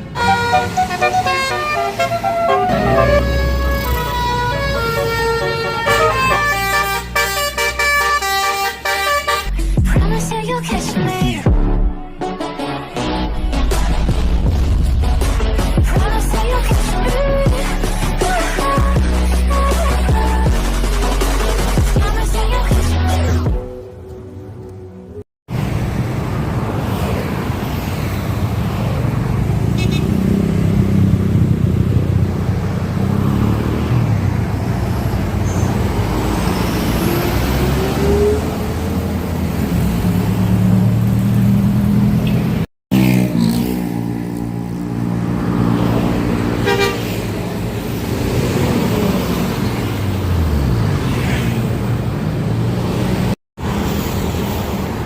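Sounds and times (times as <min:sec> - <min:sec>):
bus engine and road noise: 0:00.0 - 0:55.0
bus air horn tunes: 0:00.1 - 0:09.7, 0:46.6 - 0:47.2.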